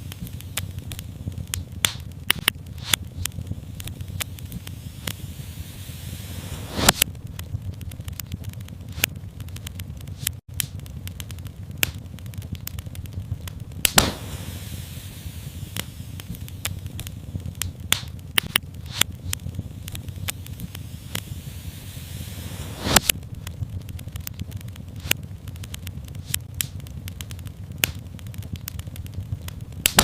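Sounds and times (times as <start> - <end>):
hiss: 0.0 - 7.0, 13.8 - 23.1
fire crackling and popping: 0.0 - 30.0
low rumble of flames: 0.0 - 30.0.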